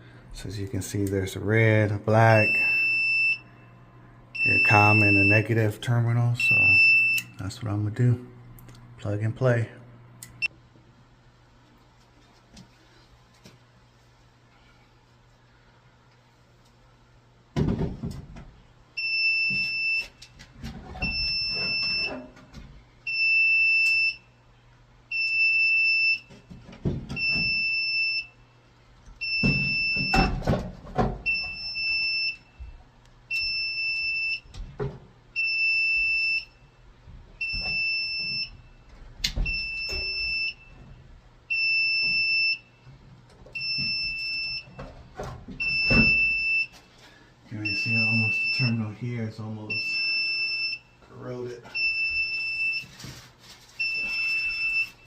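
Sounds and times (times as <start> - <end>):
alarm panel beeping: 2.2 - 3.6, 4.4 - 5.7, 6.3 - 7.5, 39.4 - 40.8, 45.6 - 46.8, 47.6 - 48.9.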